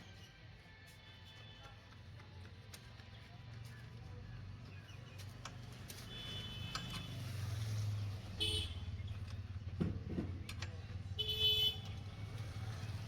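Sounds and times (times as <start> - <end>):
vehicle horn toots: 6.1 - 7.1, 8.4 - 9.0, 11.2 - 12.0.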